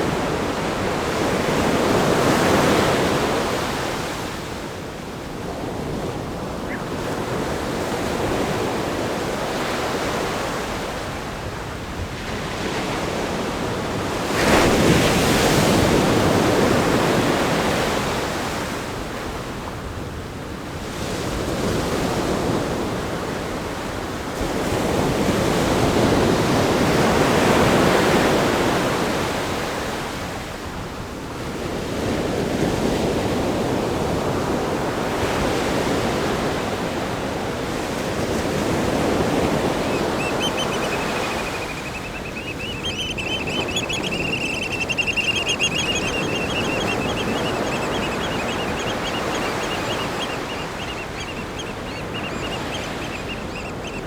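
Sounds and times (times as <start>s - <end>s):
ocean surf breaking on rocks: 32.8s - 54.0s
wind buffeting microphone: 37.3s - 54.0s.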